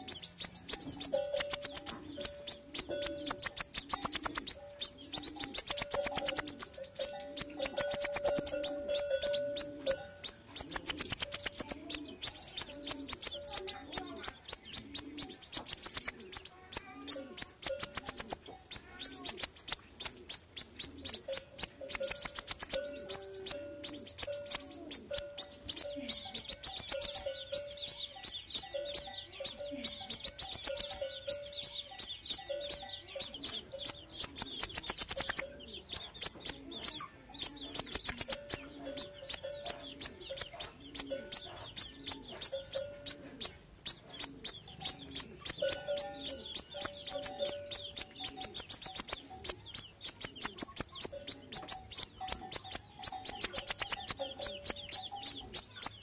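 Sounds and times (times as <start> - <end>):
bird singing high sharp chips: 0.0 - 56.0.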